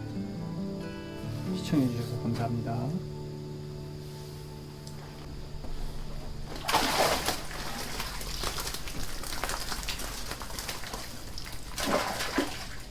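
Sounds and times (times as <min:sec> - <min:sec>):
water splashing and sloshing: 0:05.6 - 0:12.9.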